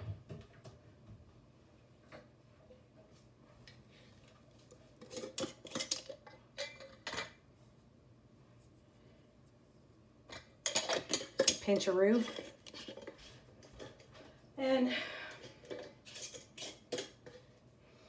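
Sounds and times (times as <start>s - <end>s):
spoon clinking and scraping a dish: 5.0s - 7.4s, 10.3s - 14.3s, 15.3s - 17.5s.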